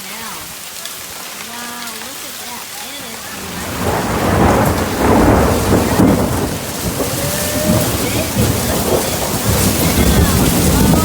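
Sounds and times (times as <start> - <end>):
heavy rain: 0.0 - 11.0
thunder rumbling: 3.0 - 11.0.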